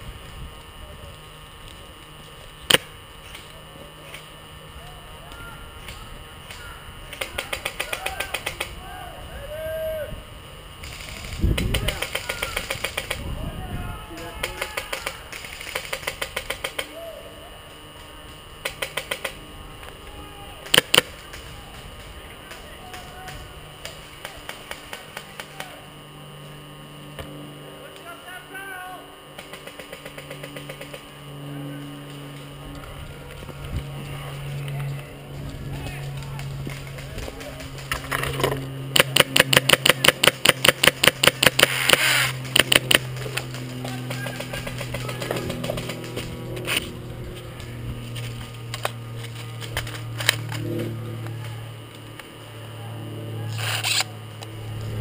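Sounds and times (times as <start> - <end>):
airsoft guns firing: 5.9 - 8.8, 10.8 - 13.2, 14.2 - 16.9, 18.6 - 19.4, 20.6 - 25.7, 29.4 - 31.1, 38.9 - 46.3.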